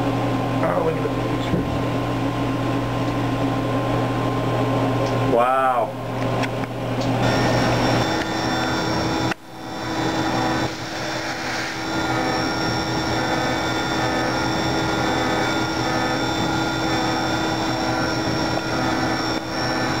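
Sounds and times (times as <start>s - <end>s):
spindle whine: 6.2s - 20.0s
milling machine cutting: 7.2s - 20.0s.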